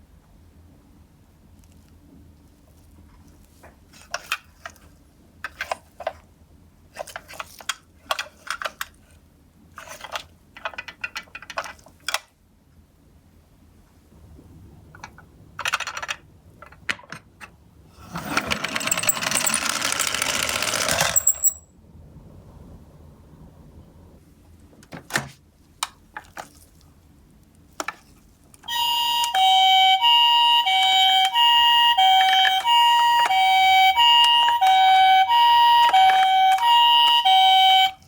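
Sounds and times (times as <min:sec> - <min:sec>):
toy cars clattering on cardboard: 0:03.2 - 0:06.3, 0:06.9 - 0:09.1, 0:09.8 - 0:12.3, 0:18.0 - 0:21.6, 0:32.0 - 0:33.4, 0:35.7 - 0:36.8.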